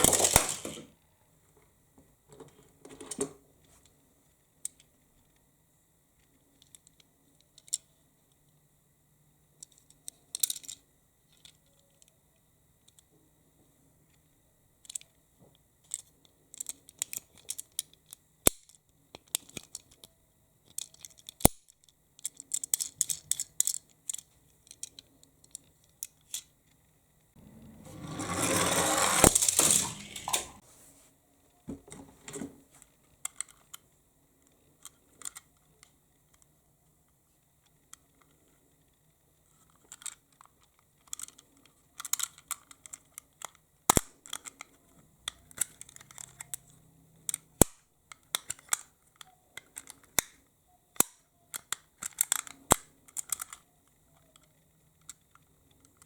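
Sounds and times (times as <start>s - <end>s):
toy car rolling rattle: 0.0s - 0.9s, 20.6s - 21.5s, 22.2s - 26.5s, 27.4s - 30.6s, 51.6s - 53.6s
toy cars clicking and rattling: 0.0s - 0.9s, 6.2s - 7.9s, 9.6s - 12.1s, 14.8s - 15.2s, 15.8s - 26.8s, 27.4s - 30.6s, 32.8s - 33.8s, 34.4s - 36.5s, 37.6s - 50.4s, 51.0s - 56.0s.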